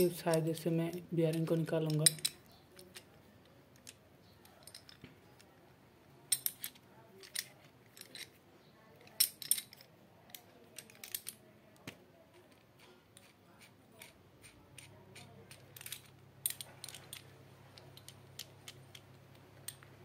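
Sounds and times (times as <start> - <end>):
metal clicks and scrapes: 6.3 - 8.4, 12.4 - 19.9.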